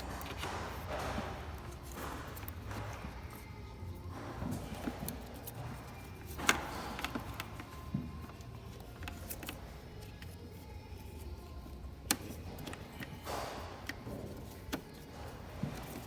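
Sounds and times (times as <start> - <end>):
plastic and metal connectors clicking: 0.0 - 16.0.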